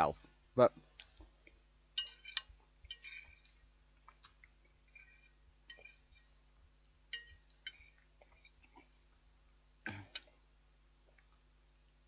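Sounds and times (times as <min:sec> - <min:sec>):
cutlery clinking on a plate: 0:02.0 - 0:03.5, 0:05.0 - 0:06.4, 0:07.1 - 0:08.6.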